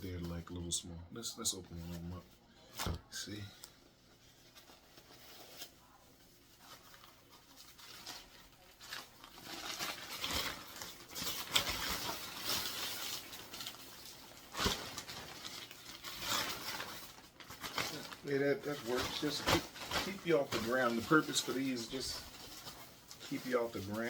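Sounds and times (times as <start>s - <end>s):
tarp crinkling and rustling: 6.6s - 24.0s.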